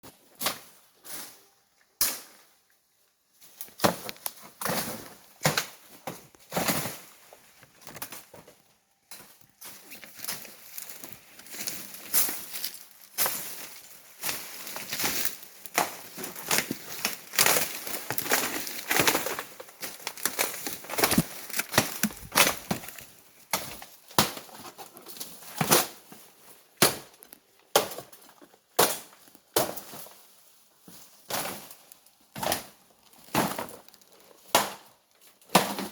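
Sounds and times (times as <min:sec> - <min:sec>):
twigs cracking: 0:09.4 - 0:25.1, 0:31.4 - 0:34.9
footsteps crunching dry leaves: 0:09.6 - 0:23.5.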